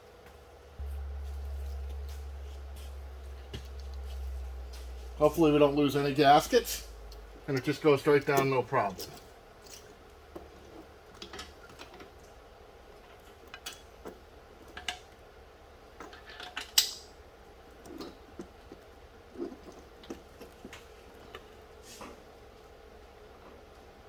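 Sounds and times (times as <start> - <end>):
metal parts clinking: 7.6 - 10.0.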